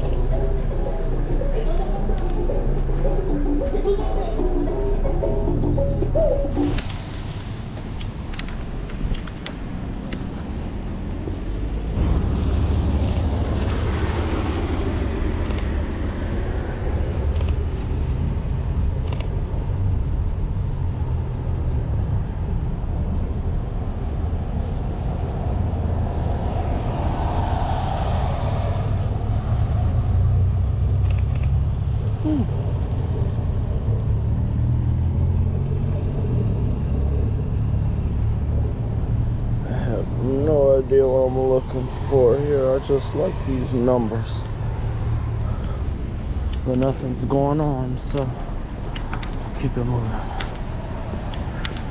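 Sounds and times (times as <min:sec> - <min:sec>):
cars passing: 0:00.0 - 0:51.9
low traffic rumble: 0:00.0 - 0:51.9
sharp clicks: 0:07.9 - 0:10.3.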